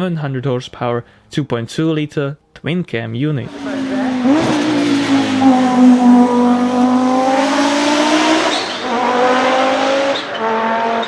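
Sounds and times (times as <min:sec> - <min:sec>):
race car engine at high revs: 0:03.4 - 0:11.0.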